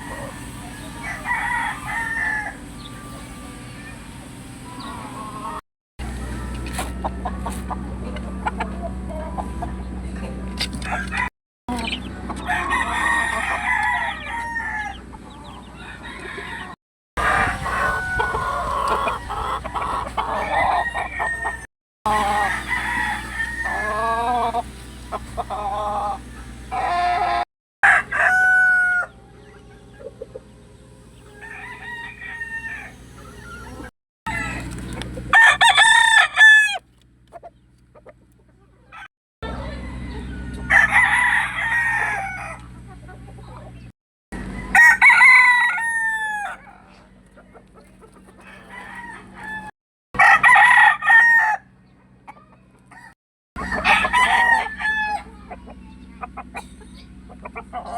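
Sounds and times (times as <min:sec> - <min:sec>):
roosters crowing: 0:00.0 - 0:07.9, 0:10.7 - 0:29.9, 0:31.0 - 0:36.9, 0:38.8 - 0:42.8, 0:44.4 - 0:47.2, 0:48.3 - 0:51.9, 0:52.8 - 0:55.6
chickens clucking: 0:00.0 - 0:40.7, 0:41.8 - 0:44.5, 0:46.3 - 0:49.7, 0:51.8 - 0:57.9.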